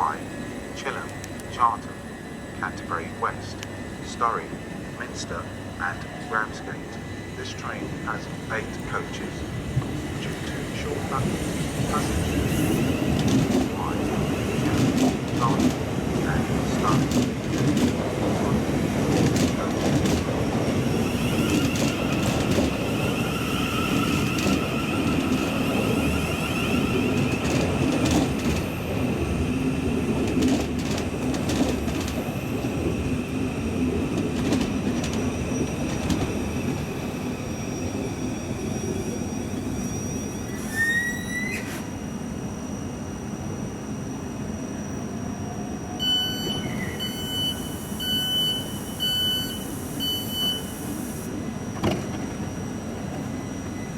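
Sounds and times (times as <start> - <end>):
train rumbling with electric whine: 0.0 - 53.9
short rising squeal: 39.6 - 42.0
door-warning beeps: 46.0 - 51.3.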